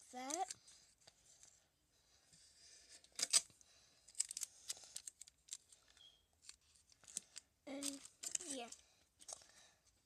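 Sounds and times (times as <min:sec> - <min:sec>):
paper and tape crackling: 0:03.1 - 0:09.6.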